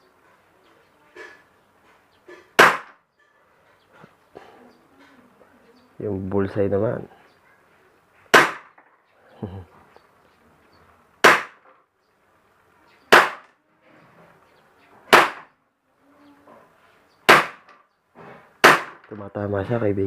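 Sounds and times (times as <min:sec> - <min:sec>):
airsoft pistol shots: 0:02.6 - 0:03.0, 0:08.3 - 0:08.8, 0:11.2 - 0:11.7, 0:13.1 - 0:13.5, 0:15.1 - 0:15.5, 0:17.3 - 0:17.7, 0:18.6 - 0:19.1.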